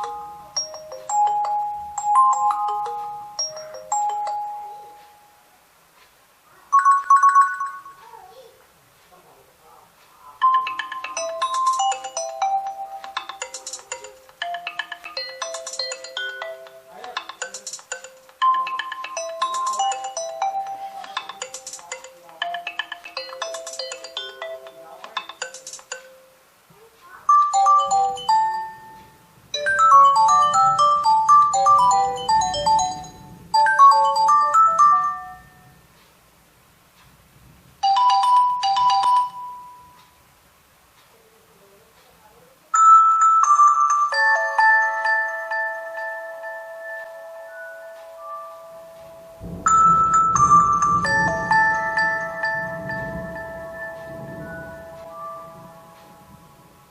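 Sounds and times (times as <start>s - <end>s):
phone ringtones and alert tones: 0.0s - 5.5s, 6.7s - 8.0s, 10.4s - 26.4s, 27.3s - 35.8s, 37.8s - 40.0s, 42.8s - 56.9s
two-note chime: 42.8s - 56.9s.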